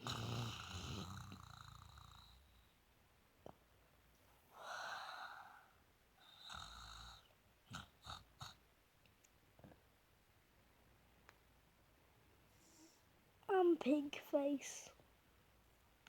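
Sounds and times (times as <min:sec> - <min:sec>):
pig snoring: 0:00.0 - 0:02.7, 0:06.2 - 0:08.6.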